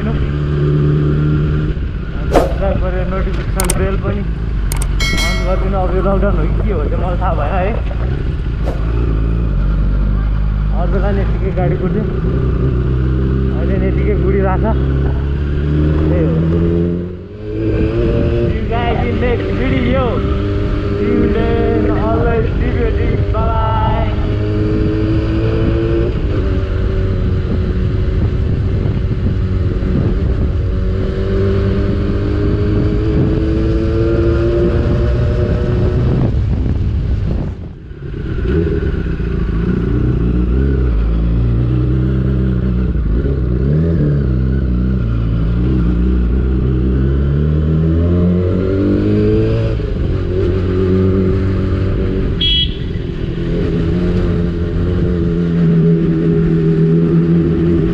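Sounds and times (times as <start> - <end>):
short high beep: 4.7 - 5.8
wind noise on microphone: 19.7 - 41.6
motorcycle engine revving: 38.0 - 57.9.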